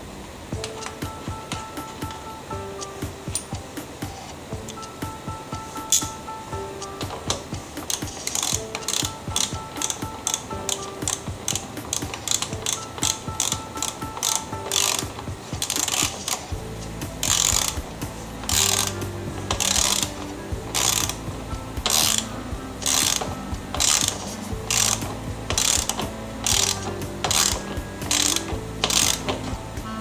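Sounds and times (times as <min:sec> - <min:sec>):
steady low hum: 0:07.2 - 0:30.0
ratchet wrench clicking: 0:11.8 - 0:29.6.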